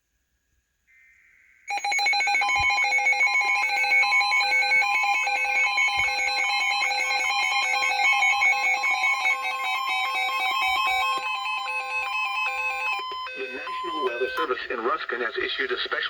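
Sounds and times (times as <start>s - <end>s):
harsh alarm tone: 1.7s - 15.3s.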